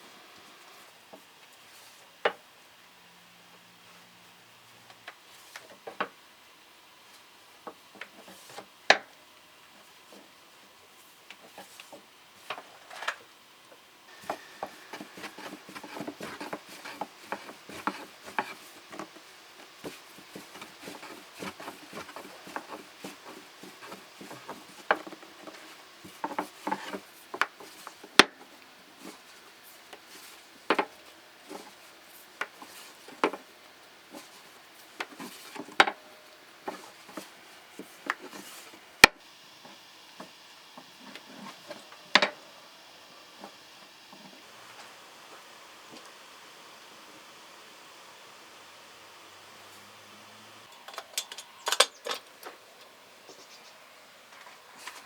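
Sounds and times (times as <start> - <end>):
utensils clicking on wood: 14.1 - 28.4.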